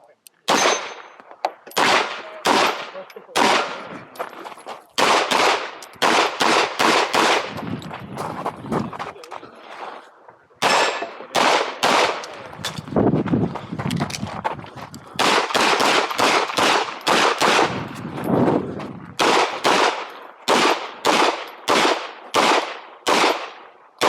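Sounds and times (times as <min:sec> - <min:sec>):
pistol shots echoing: 0:00.4 - 0:04.0, 0:05.0 - 0:07.6, 0:10.6 - 0:12.4, 0:15.2 - 0:17.8, 0:19.2 - 0:23.8.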